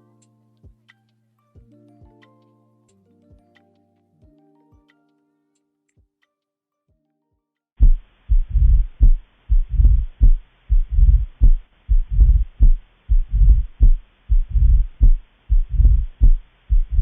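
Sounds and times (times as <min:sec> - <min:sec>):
low heart murmur rumble: 0:07.8 - 0:17.0
sharp heart sounds: 0:07.8 - 0:17.0.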